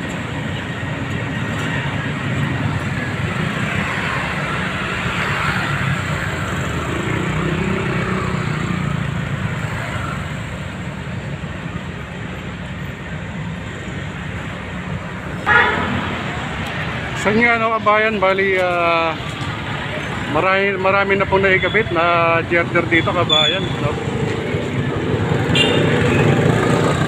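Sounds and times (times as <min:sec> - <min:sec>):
vehicle engines running: 0:00.0 - 0:27.0
vehicle passing: 0:15.2 - 0:27.0.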